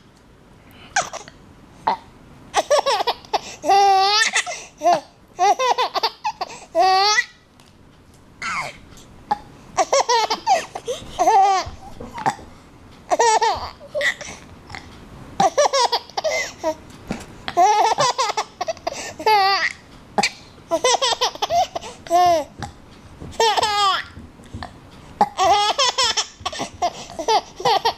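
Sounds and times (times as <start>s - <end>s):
baby laughing: 2.6s - 7.3s, 8.4s - 8.8s, 9.8s - 12.4s, 13.1s - 14.4s, 15.4s - 16.8s, 17.5s - 22.6s, 23.3s - 24.2s, 25.2s - 27.9s.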